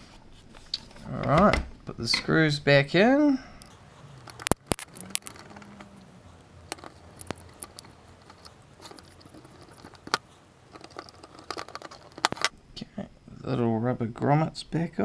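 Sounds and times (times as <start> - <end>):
screws and screwdriver clicking: 3.6 - 12.5.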